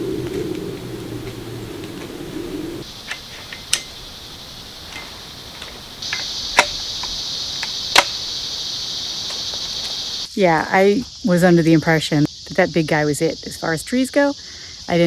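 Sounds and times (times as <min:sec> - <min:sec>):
insects buzzing: 0:00.0 - 0:15.0
sharp clicks: 0:02.8 - 0:04.1, 0:04.8 - 0:08.4.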